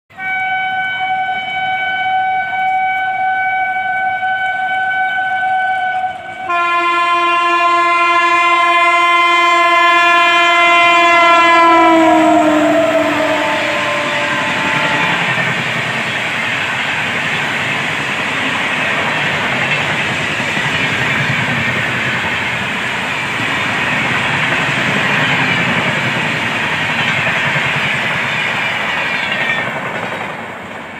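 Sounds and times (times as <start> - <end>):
locomotive horn blasts: 0.1 - 17.1
train coaches running noise: 0.1 - 30.9.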